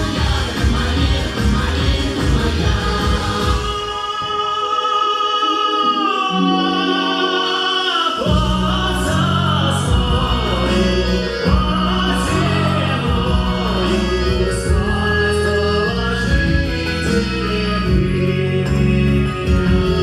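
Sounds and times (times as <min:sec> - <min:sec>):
bass accompaniment: 0:00.0 - 0:03.9, 0:08.2 - 0:20.0
person singing: 0:00.0 - 0:20.0.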